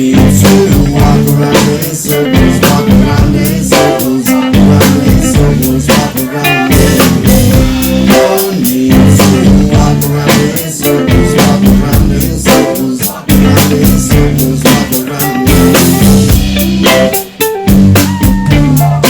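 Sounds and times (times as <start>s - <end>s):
drum kit beat: 0.0s - 19.0s
guitar: 0.0s - 19.0s
heavy bass line: 0.0s - 19.0s.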